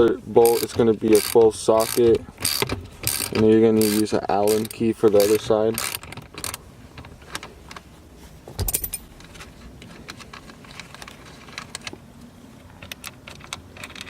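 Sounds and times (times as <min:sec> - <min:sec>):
metal tools clinking: 0:08.6 - 0:09.5
metal clatter: 0:08.6 - 0:11.8.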